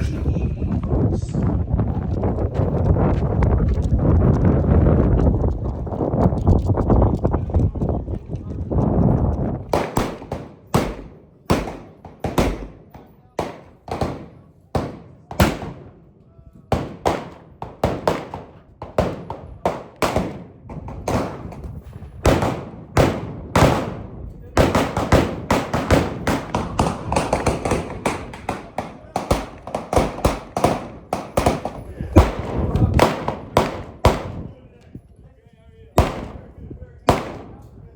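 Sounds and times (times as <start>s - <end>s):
gunshots echoing: 9.7s - 16.1s, 16.7s - 34.6s, 36.0s - 37.8s.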